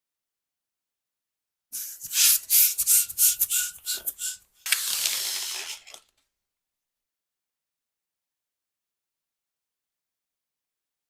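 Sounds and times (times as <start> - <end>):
balloon squeaking: 1.8 - 6.0.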